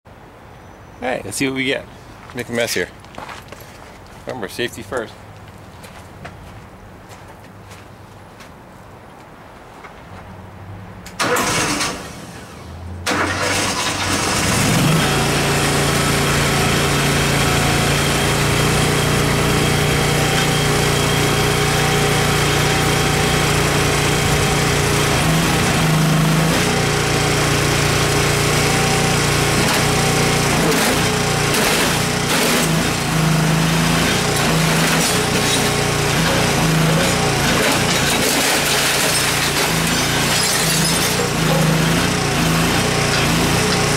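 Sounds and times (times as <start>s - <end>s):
backhoe engine cranking and running: 11.1s - 43.9s.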